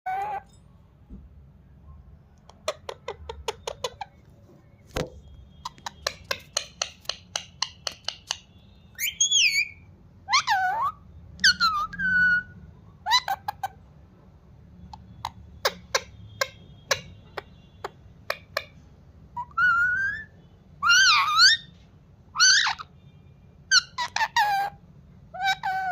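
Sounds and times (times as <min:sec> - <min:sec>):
parrot clicking: 0:05.7 - 0:08.5
parrot whistled squawks: 0:08.2 - 0:13.8, 0:19.4 - 0:22.9, 0:23.7 - 0:25.9.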